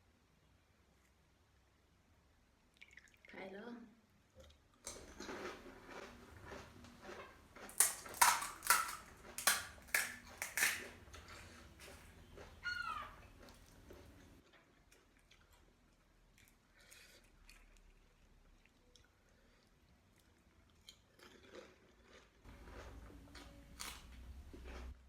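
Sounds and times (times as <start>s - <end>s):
crunchy food being chewed: 4.4s - 25.0s.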